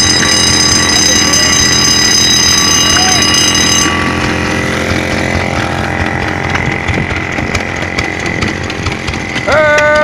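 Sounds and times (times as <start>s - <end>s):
fire alarm bell ringing: 0.0s - 5.4s
person shouting: 9.4s - 10.0s.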